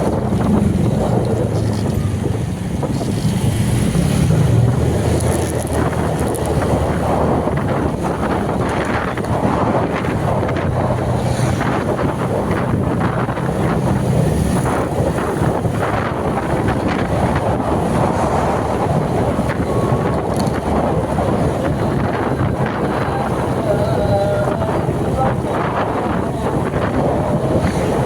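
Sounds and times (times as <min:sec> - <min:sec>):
low rumble: 0:00.0 - 0:28.0
wind buffeting microphone: 0:00.0 - 0:28.0.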